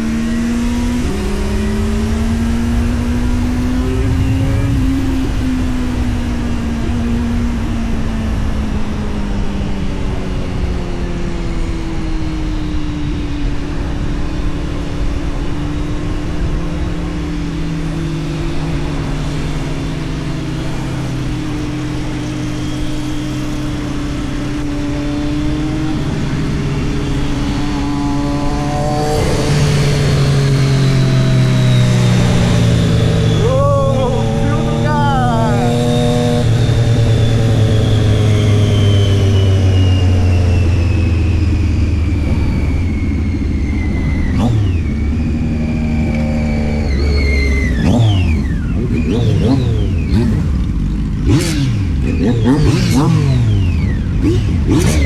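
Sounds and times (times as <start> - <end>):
motorcycle engine and exhaust: 0.0 - 55.0.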